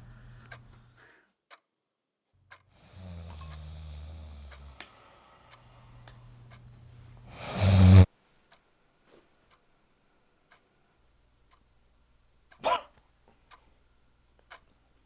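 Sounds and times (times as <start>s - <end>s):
person snoring and snorting: 2.8s - 4.8s, 7.3s - 8.1s
clock ticking: 3.2s - 4.8s, 5.5s - 7.3s, 10.5s - 12.8s, 13.4s - 15.0s.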